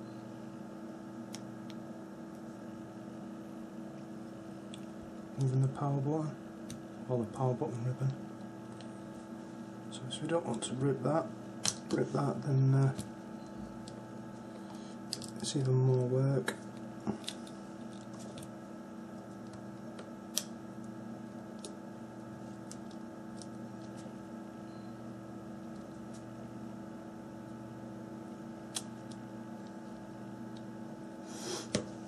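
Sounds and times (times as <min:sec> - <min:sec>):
electrical hum: 0:00.0 - 0:32.0.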